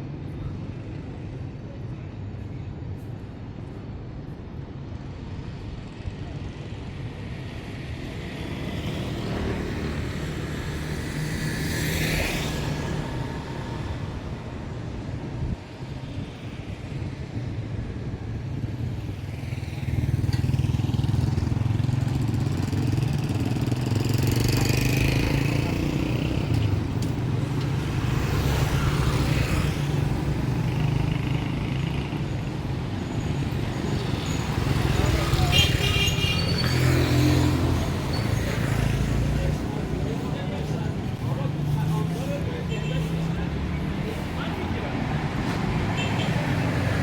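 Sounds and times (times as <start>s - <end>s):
vehicles whooshing past: 8.0s - 14.8s, 18.6s - 47.0s
vehicle engines droning: 18.1s - 47.0s.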